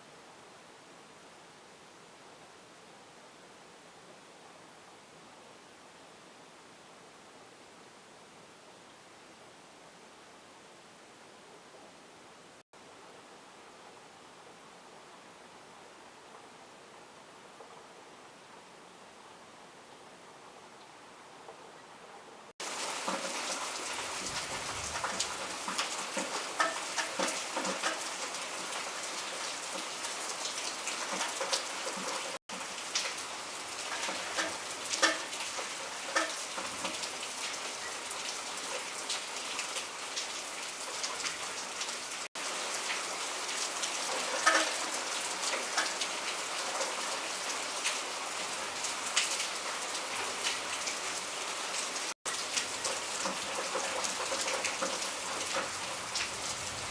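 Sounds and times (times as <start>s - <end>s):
heavy rain: 22.6s - 56.9s
raindrops striking a surface: 22.6s - 56.9s.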